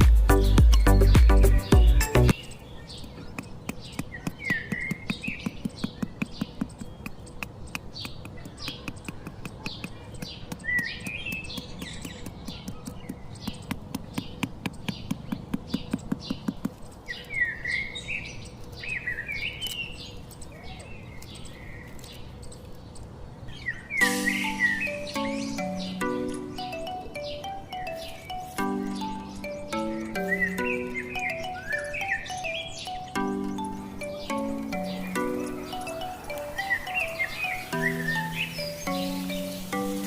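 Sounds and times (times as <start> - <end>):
small birds chirping: 0.0 - 40.0
rapid light clicks: 3.0 - 17.5.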